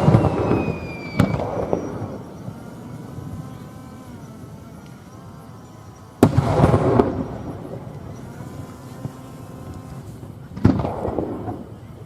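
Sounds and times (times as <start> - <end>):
firework bang: 0.0 - 2.2, 6.2 - 7.7, 10.5 - 11.7
firework crackling: 0.0 - 5.0, 6.2 - 12.0.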